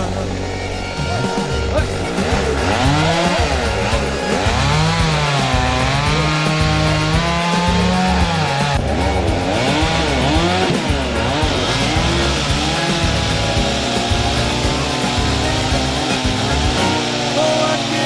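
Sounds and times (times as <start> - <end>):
background music: 0.0 - 18.0
chainsaw cutting wood: 0.0 - 18.0.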